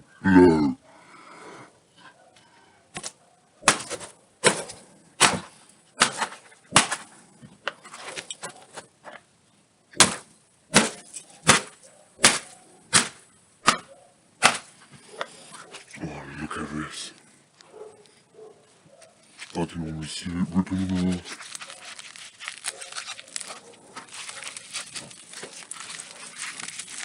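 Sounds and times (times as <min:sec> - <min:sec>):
sledgehammer striking tablet: 0:03.6 - 0:07.1, 0:10.0 - 0:14.7.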